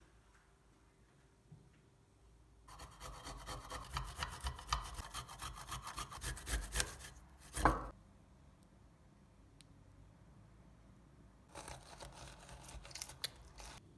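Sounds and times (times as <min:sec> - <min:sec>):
ginger rasping on metal grater: 0:02.7 - 0:07.9, 0:11.5 - 0:13.8.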